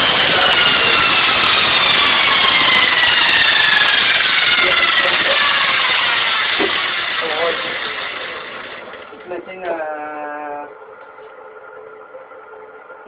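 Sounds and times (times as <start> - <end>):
sharpening machine whirring: 0.0 - 9.9.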